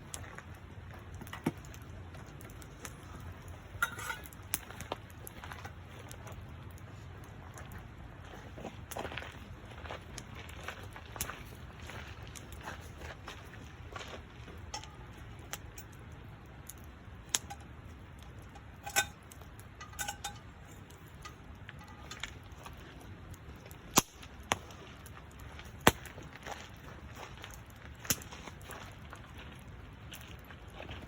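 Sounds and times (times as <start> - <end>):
campfire crackling and popping: 0.0 - 31.0.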